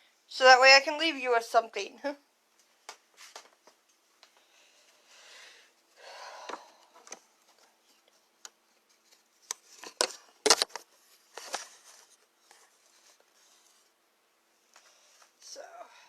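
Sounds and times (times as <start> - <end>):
rustling and scraping: 2.6 - 5.2, 6.6 - 14.0.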